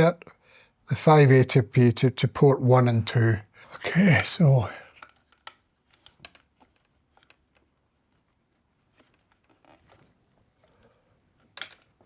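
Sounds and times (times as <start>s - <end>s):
plastic parts clicking: 4.9s - 10.0s, 10.6s - 12.0s.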